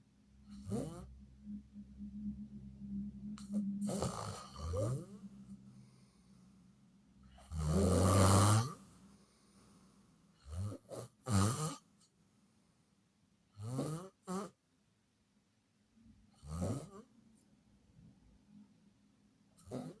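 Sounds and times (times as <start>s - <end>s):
person snoring: 0.4s - 6.4s, 7.3s - 9.0s.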